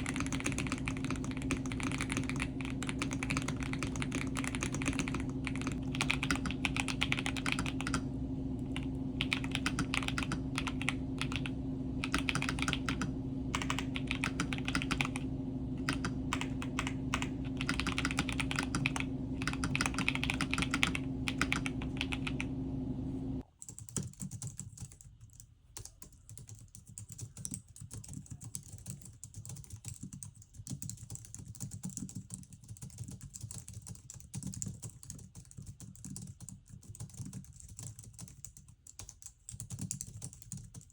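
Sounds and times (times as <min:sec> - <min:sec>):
mechanical keyboard typing: 0:00.0 - 0:22.6, 0:23.4 - 0:40.9
steady low hum: 0:00.0 - 0:23.5.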